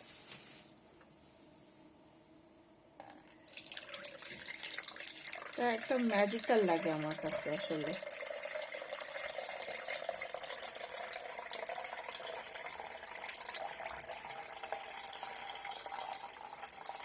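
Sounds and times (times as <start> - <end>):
water pouring and splashing: 3.5 - 17.0.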